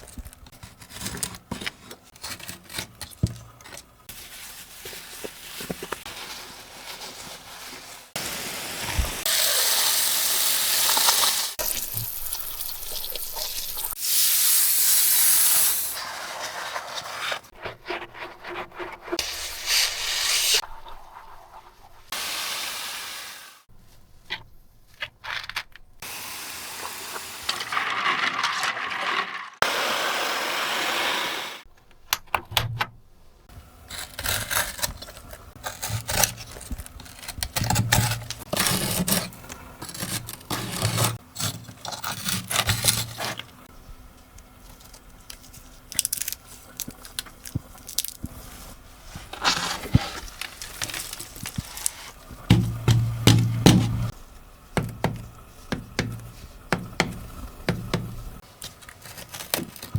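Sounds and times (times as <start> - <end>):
hissing spray bursts: 22.1 - 23.7, 29.6 - 31.6.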